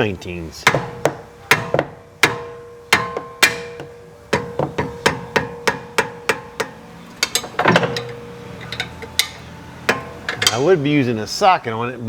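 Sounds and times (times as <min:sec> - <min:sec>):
hammer striking metal wrench: 0:00.7 - 0:10.8.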